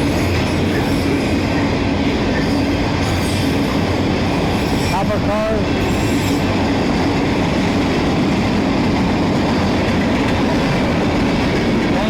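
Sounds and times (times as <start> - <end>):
wind buffeting microphone: 6.4 - 12.0.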